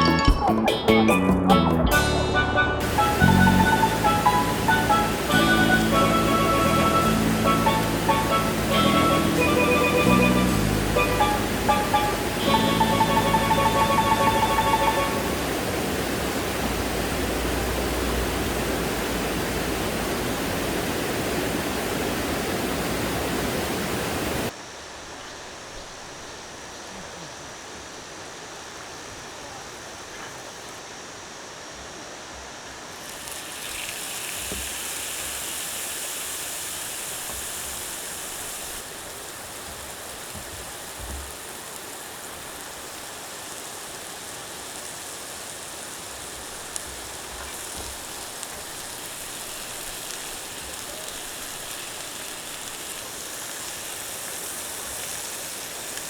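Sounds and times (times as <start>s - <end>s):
bright hiss: 2.0s - 29.1s, 32.9s - 56.0s
water rushing over rocks: 2.8s - 24.5s.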